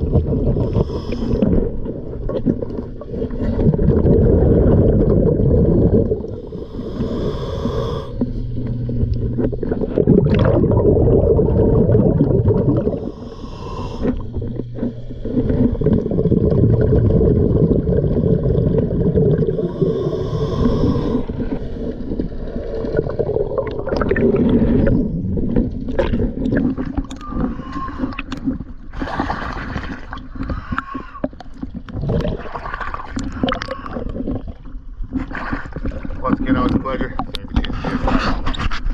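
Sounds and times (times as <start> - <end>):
bubbling and gurgling: 0.0 - 38.9
diver breathing through regulator: 0.3 - 2.2, 6.1 - 10.6, 12.2 - 16.5, 19.4 - 22.5, 27.1 - 31.5.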